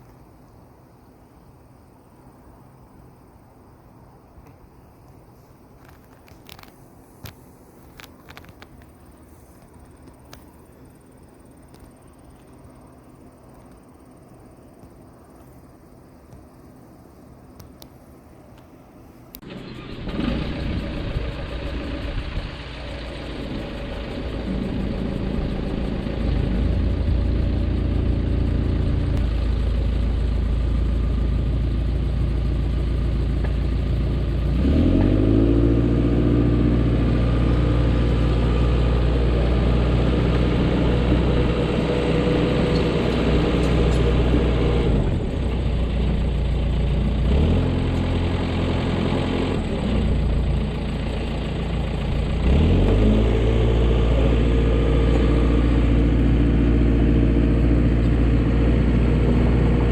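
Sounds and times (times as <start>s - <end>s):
bulldozer diesel engine revving: 19.4s - 59.9s.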